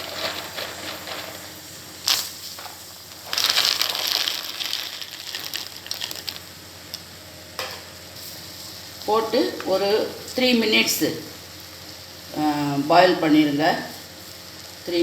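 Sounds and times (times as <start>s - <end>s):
soya chunks stirred in boiling water: 0.0s - 7.0s.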